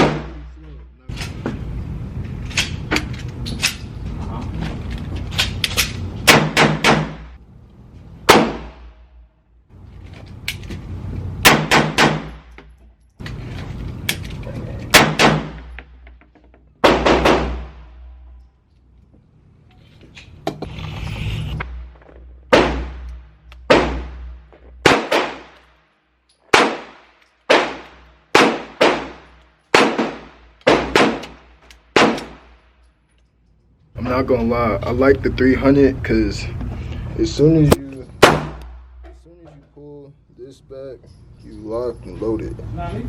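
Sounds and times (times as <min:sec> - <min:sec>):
gunshots with echo: 0:00.0 - 0:00.5, 0:08.3 - 0:09.0, 0:16.8 - 0:18.1, 0:23.7 - 0:25.6, 0:26.5 - 0:32.6.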